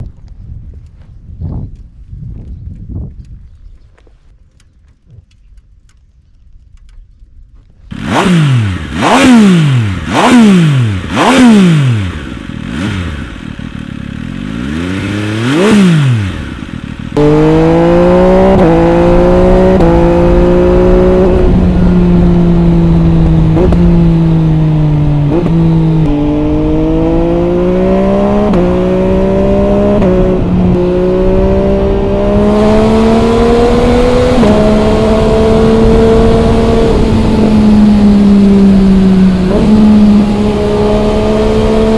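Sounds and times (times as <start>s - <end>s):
wind noise: 0.0s - 11.4s, 17.2s - 41.9s
motorcycle riding with gear changes: 0.0s - 41.9s
motorcycle engine revving: 7.9s - 41.9s.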